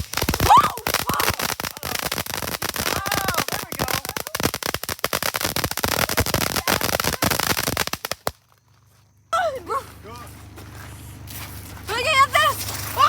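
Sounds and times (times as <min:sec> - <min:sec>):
fireworks popping and crackling: 0:00.0 - 0:08.7.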